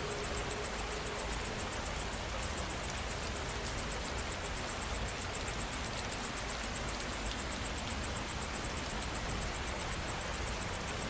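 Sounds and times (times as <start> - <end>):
insect chirping: 0.0 - 11.0
rain falling: 0.0 - 11.0.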